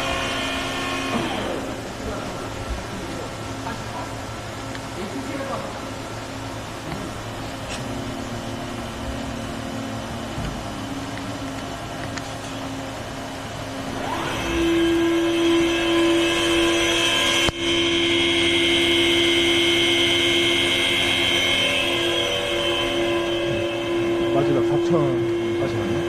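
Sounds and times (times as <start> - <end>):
machine hum: 0.0 - 26.0
spindle whine rising: 0.0 - 26.0.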